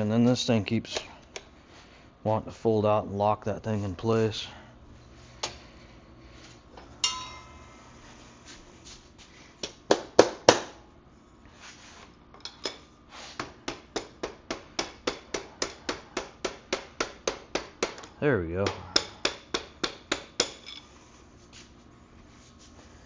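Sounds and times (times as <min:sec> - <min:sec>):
hammer striking metal axle: 0:07.0 - 0:07.8, 0:13.4 - 0:20.8.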